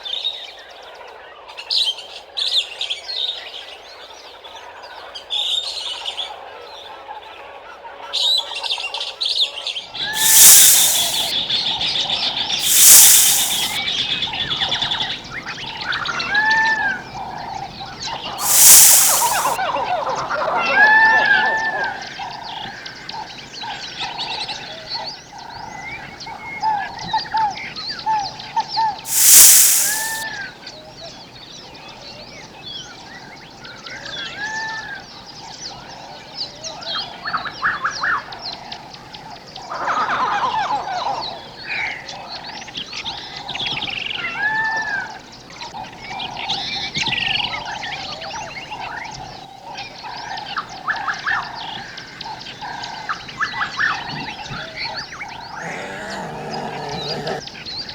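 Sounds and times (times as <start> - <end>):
loud hiss-like burst: 10.2 - 11.3, 12.6 - 13.8, 18.4 - 19.6, 29.1 - 30.2
short arching animal call: 10.2 - 11.3, 12.6 - 13.8, 18.4 - 19.6, 29.1 - 30.2, 55.6 - 57.4
steady pulsing animal call: 10.2 - 11.3, 12.6 - 13.8, 18.4 - 19.6, 29.1 - 30.2, 55.6 - 57.4
bird calls: 12.6 - 13.8, 18.4 - 19.6, 55.6 - 57.4.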